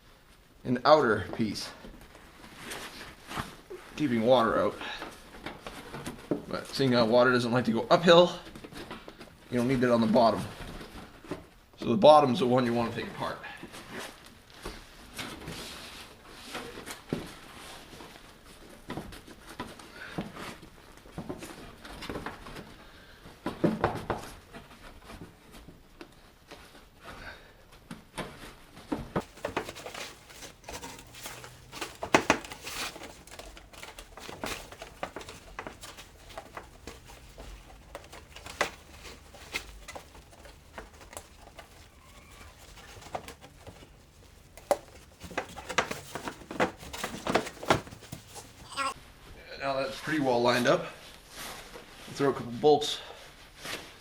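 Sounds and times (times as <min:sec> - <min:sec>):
plastic parts clicking and knocking: 0:29.2 - 0:48.7.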